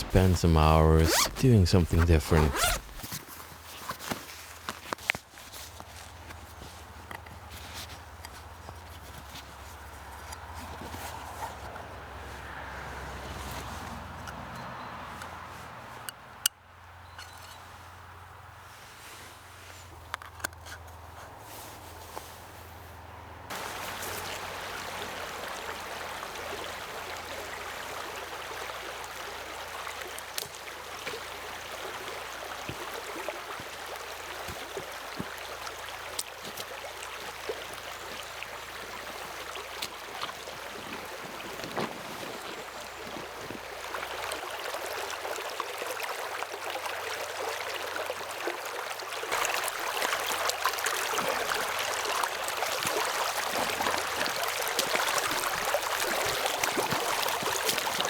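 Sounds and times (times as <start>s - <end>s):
river running over rocks: 23.5s - 58.0s.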